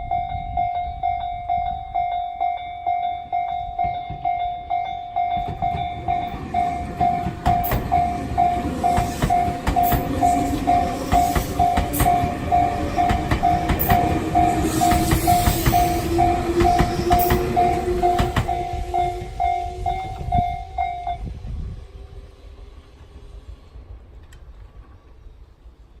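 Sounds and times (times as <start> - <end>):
level crossing warning bell: 0.0 - 21.2
train hum: 0.0 - 26.0
train wheels clacking over rails: 3.7 - 21.3.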